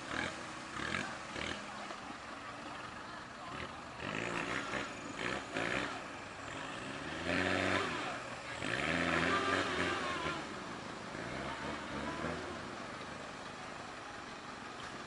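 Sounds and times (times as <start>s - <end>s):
engine revving hard: 3.6s - 12.7s.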